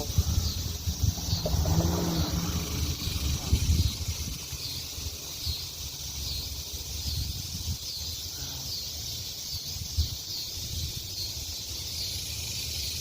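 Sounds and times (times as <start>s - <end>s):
cicadas buzzing: 0.0s - 13.0s
low rumble: 0.1s - 4.3s.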